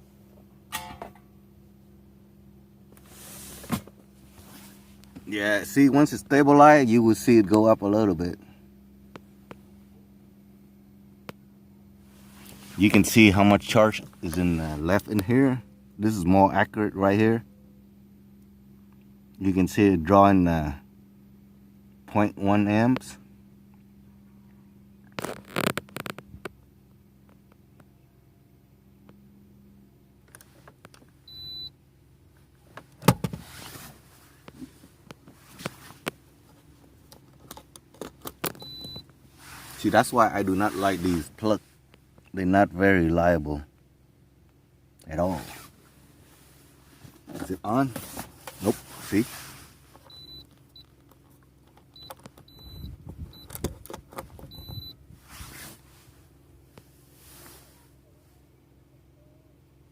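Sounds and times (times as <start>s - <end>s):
short electronic beep: 50.1s - 50.4s, 52.0s - 53.5s, 54.5s - 55.0s.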